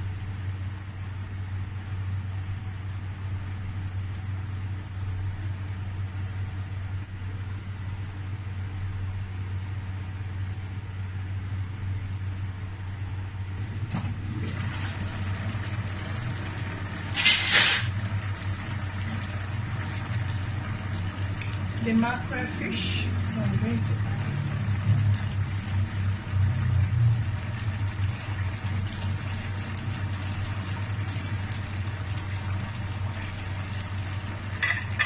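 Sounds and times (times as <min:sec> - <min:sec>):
low motor hum: 0:00.0 - 0:17.2, 0:17.9 - 0:35.0.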